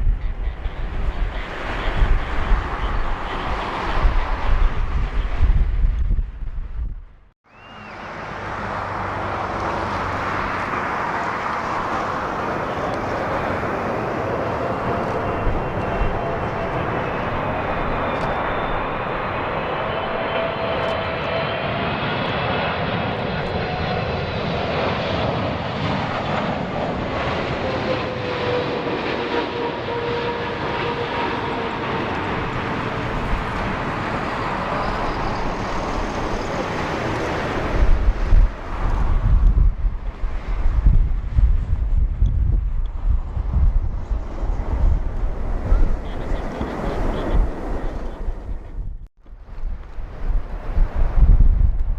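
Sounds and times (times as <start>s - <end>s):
jet airliner passing overhead: 0.0s - 6.9s, 7.5s - 51.9s.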